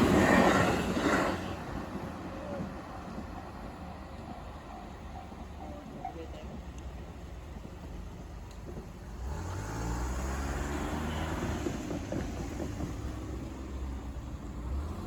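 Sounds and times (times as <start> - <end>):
vehicle engine passing close: 9.1 - 12.1.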